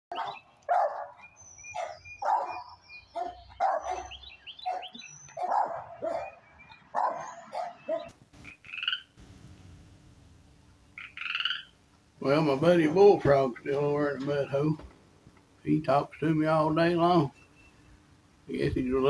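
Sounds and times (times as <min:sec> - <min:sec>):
dog barking: 0:00.1 - 0:08.1
birds chirping: 0:00.1 - 0:09.3, 0:10.4 - 0:19.0.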